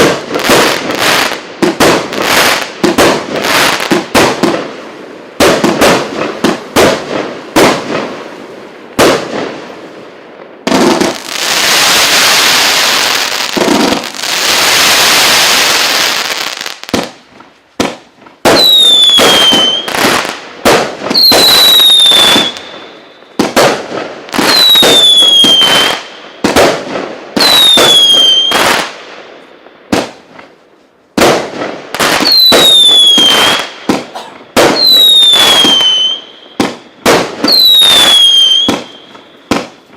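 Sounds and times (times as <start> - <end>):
fireworks bangs: 0.0 - 30.6, 31.2 - 39.9
fireworks crackling hiss: 0.0 - 39.9
whistling firework shots: 10.6 - 17.2, 17.8 - 29.2, 31.2 - 39.9.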